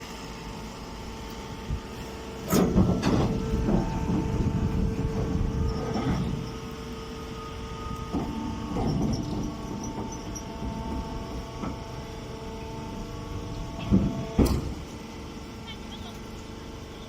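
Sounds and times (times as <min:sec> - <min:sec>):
baling machine motor hum: 0:00.0 - 0:17.0.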